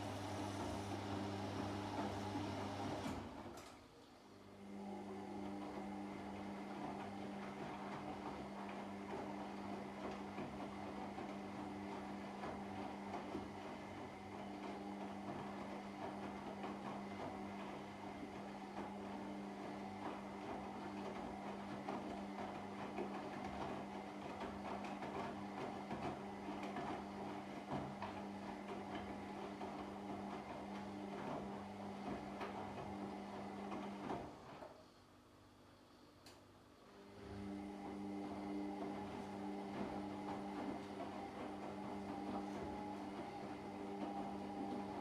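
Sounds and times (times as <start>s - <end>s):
water and laundry churning: 0.0s - 3.5s, 4.6s - 34.7s, 37.4s - 45.0s
washing machine motor hum: 0.0s - 3.7s, 4.4s - 35.0s, 36.8s - 45.0s.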